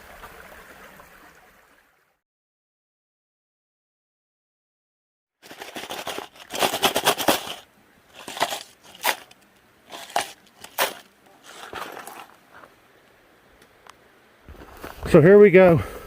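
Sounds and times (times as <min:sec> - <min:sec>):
footsteps crunching on rocky trail: 0:05.4 - 0:12.8, 0:14.4 - 0:15.2.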